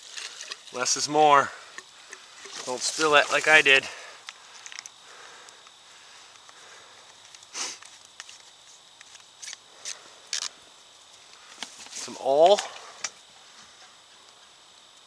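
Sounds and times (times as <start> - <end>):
fuel can scrapes and clicks: 0.0 - 0.7, 1.7 - 3.6.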